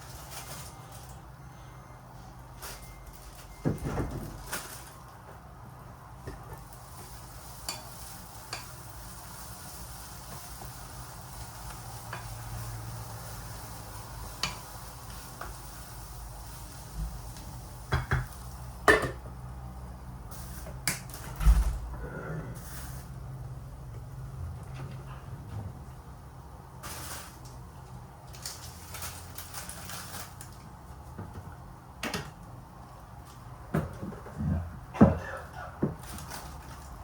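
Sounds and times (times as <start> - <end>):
food sizzling in a pan: 6.6 - 18.9.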